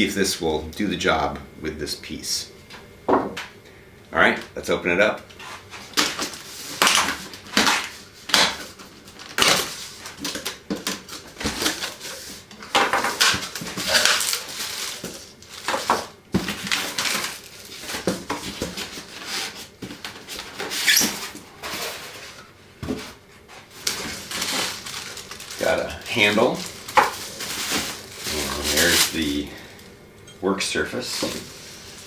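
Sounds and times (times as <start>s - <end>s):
packaging rustling: 5.9s - 29.9s
cardboard box being opened: 26.9s - 29.4s.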